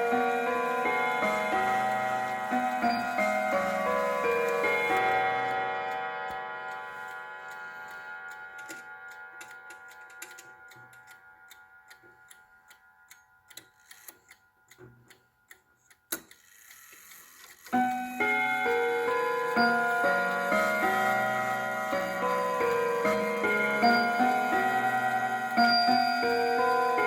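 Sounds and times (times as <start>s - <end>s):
clock chime notes: 0.0s - 13.0s, 17.8s - 27.0s
clock ticking: 0.0s - 27.0s.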